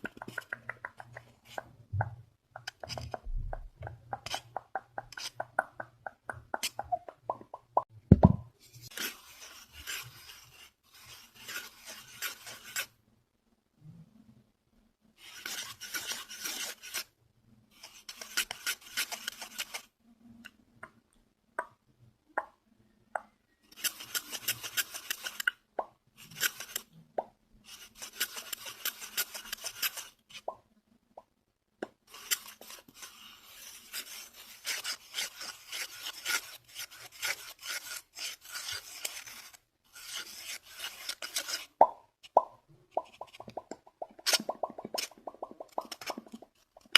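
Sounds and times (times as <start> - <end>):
fast scratching: 8.9 - 13.0, 17.8 - 19.9, 23.7 - 25.5, 26.2 - 26.9, 27.7 - 30.4, 32.1 - 41.8, 43.0 - 46.8.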